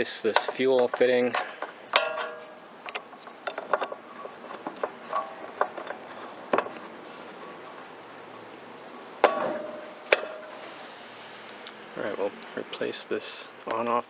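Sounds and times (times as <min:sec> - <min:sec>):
metal tools clicking and clinking: 0:00.1 - 0:06.0.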